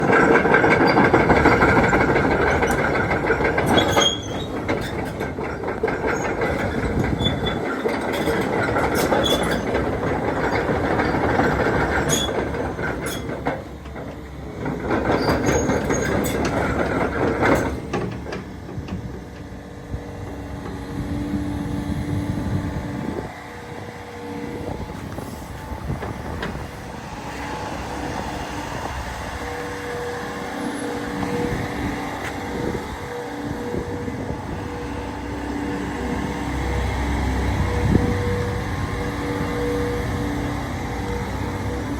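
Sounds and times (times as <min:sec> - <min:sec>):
metallic clanking and squealing: 0:00.0 - 0:19.5
excavator running: 0:00.0 - 0:41.9.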